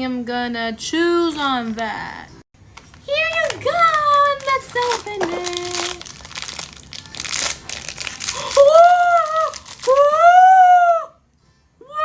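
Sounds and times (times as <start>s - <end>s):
plastic wrapping crinkling and tearing: 2.6s - 10.3s
high-pitched vocal sounds: 8.2s - 11.2s.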